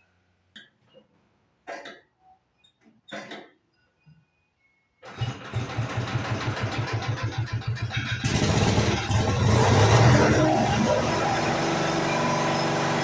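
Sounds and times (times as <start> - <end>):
welder engine starting up: 5.1 - 13.0.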